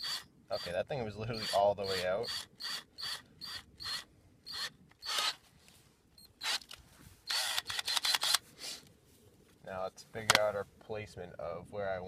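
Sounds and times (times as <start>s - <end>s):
drill bit scraping clicks: 6.4s - 8.4s.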